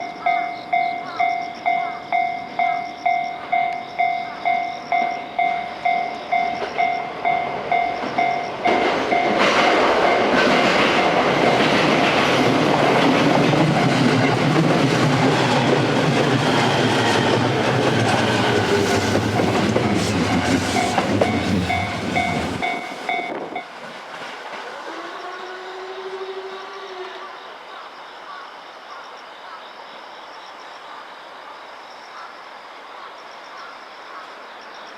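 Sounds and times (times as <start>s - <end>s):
level crossing warning bell: 0.0s - 12.3s, 18.9s - 23.8s
electric train passing: 0.0s - 27.3s.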